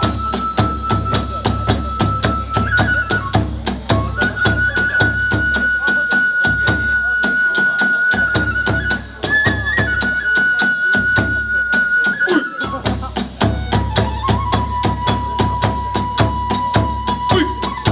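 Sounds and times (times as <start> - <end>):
bamboo flute high note: 0.0 - 12.8, 13.4 - 17.9
drums beating: 0.0 - 17.9.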